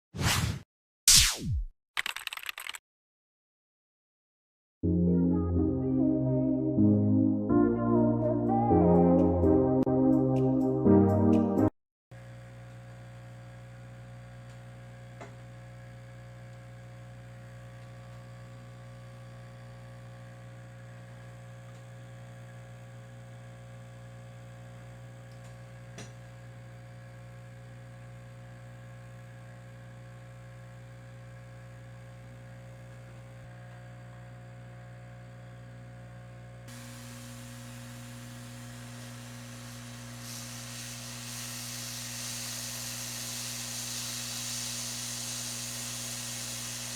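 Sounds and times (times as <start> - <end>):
second hum tone: 29.6 - 46.9
electrical mains hum: 29.8 - 46.9
hiss: 36.7 - 46.9.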